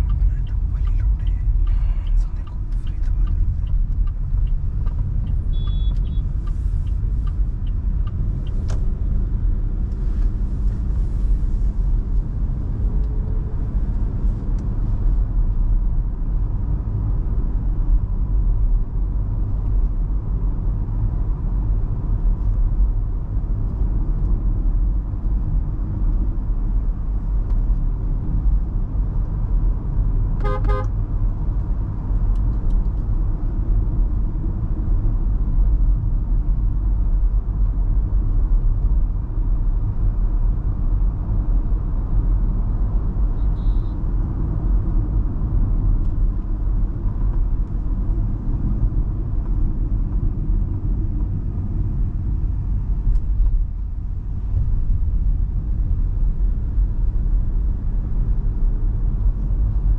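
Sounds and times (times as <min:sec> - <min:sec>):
car engine running: 0:00.0 - 0:20.7
road and tyre noise: 0:00.0 - 0:59.9.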